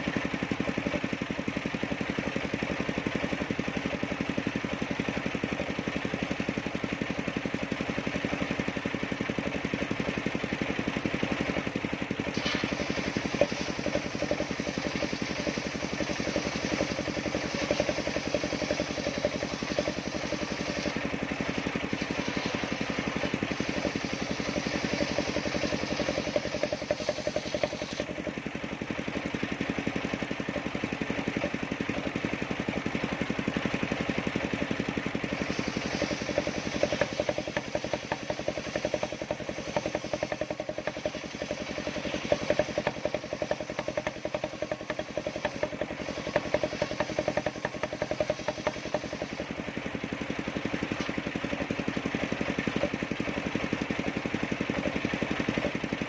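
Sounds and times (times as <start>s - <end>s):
sawmill engine running: 0.0s - 56.0s
saw blade cutting wood hiss: 12.3s - 21.0s, 22.0s - 28.0s, 35.3s - 49.5s.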